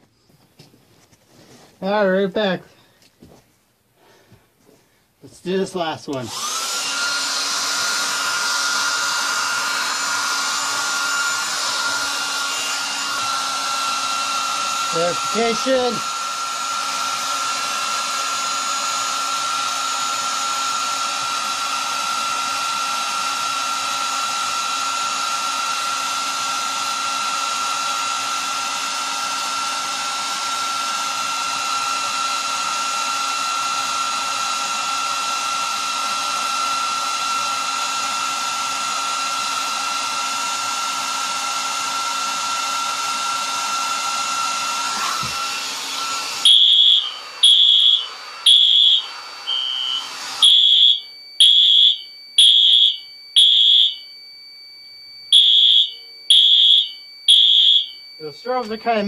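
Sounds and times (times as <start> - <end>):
hair dryer running: 5.4 - 54.0, 55.3 - 59.0.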